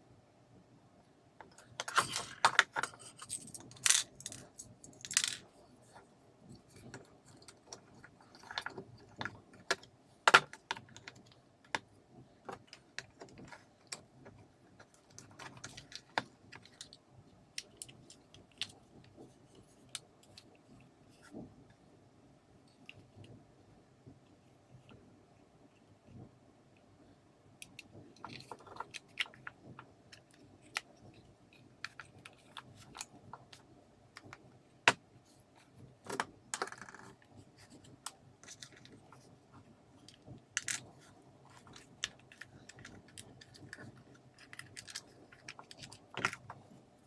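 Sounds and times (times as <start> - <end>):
small hard parts clicking and rattling: 1.5 - 5.5, 36.0 - 39.2, 40.0 - 46.8.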